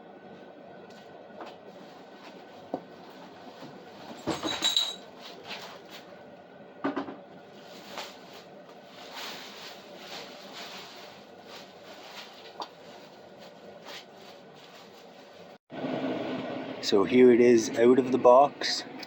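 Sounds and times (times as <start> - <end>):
propane heater roaring: 0.0 - 19.0.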